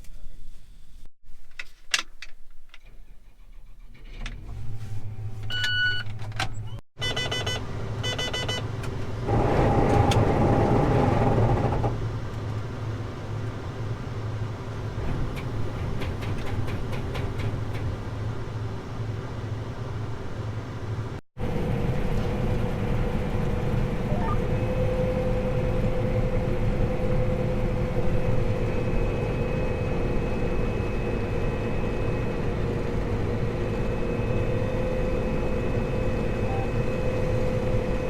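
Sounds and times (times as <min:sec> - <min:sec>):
engine whine: 0:04.0 - 0:15.8, 0:18.0 - 0:38.0
short electronic beeps: 0:07.0 - 0:08.6, 0:24.1 - 0:24.5, 0:36.4 - 0:36.8
combine engine running: 0:07.7 - 0:12.6, 0:21.4 - 0:38.0.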